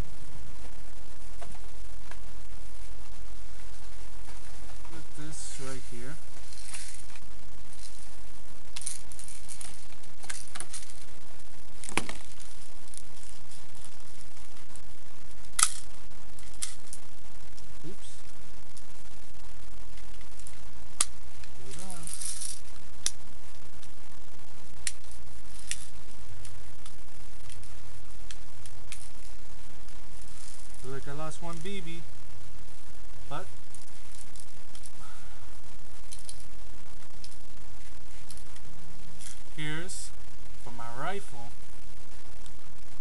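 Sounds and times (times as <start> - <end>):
packaging clicks and crinkles: 6.4 - 14.7, 36.0 - 39.4
plastic pellets clicking: 15.5 - 17.0.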